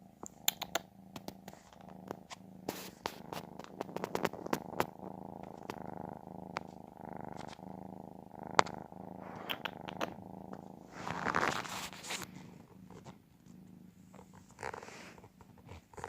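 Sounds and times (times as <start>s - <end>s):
cat purring: 0.0s - 16.0s
sharp clicks: 0.2s - 1.4s
rustling noise: 1.1s - 7.8s, 10.5s - 16.0s.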